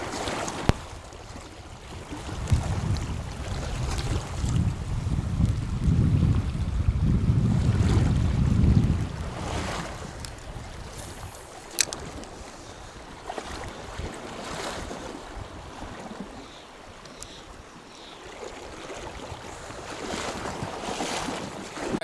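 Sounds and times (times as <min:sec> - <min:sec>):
wind gusting on microphone: 0:01.8 - 0:17.8
sharp click: 0:11.0 - 0:12.1.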